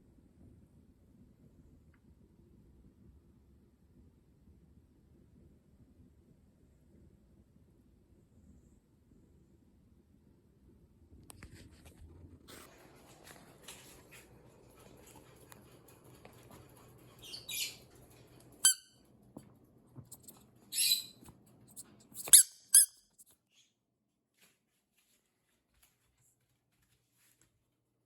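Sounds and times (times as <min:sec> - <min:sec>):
dog squeaking: 0:17.2 - 0:17.8, 0:18.6 - 0:18.9, 0:20.7 - 0:21.2, 0:22.2 - 0:22.9.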